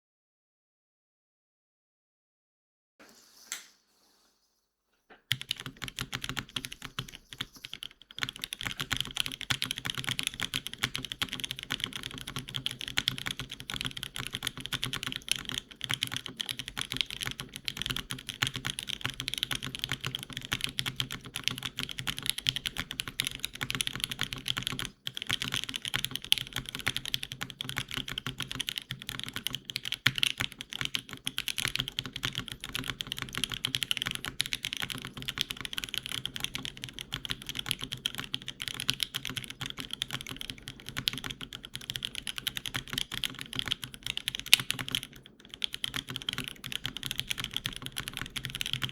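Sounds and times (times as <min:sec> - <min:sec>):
mechanical keyboard typing: 0:05.3 - 0:48.9.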